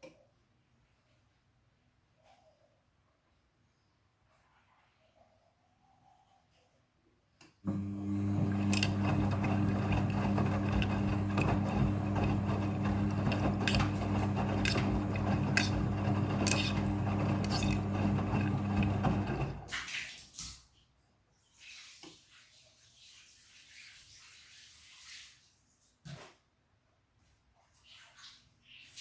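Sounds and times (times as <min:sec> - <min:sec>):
washing machine motor hum: 0:07.7 - 0:19.8.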